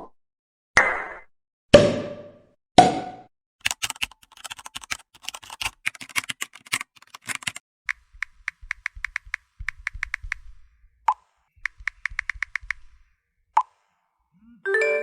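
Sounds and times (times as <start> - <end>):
computer keyboard typing: 3.6 - 10.7, 11.6 - 13.1.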